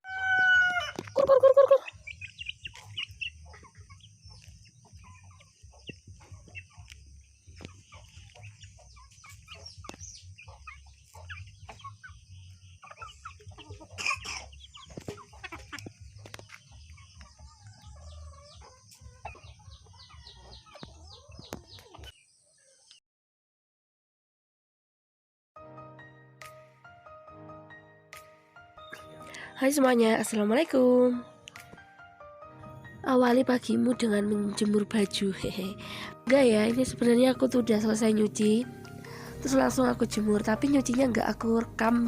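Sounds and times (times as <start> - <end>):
rooster crowing: 0.0 - 1.0
chickens clucking: 0.0 - 23.0.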